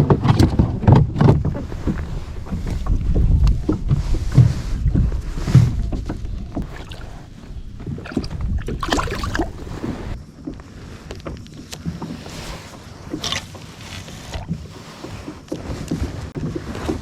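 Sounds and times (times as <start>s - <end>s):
knocks in a kayak: 0.0s - 6.7s
wind rumble on microphone: 0.0s - 17.0s
water splashing: 1.3s - 10.4s.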